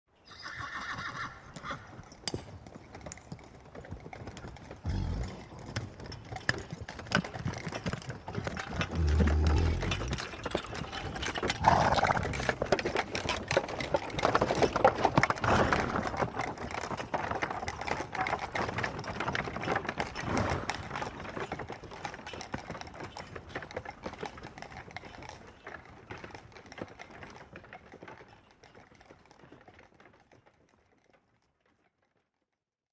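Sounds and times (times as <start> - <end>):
horse whinnying: 0.2 - 2.0, 4.8 - 5.7, 8.8 - 12.7, 20.2 - 21.2
harness and cart rattling: 0.4 - 32.2
horse hooves clip-clopping: 0.4 - 32.4.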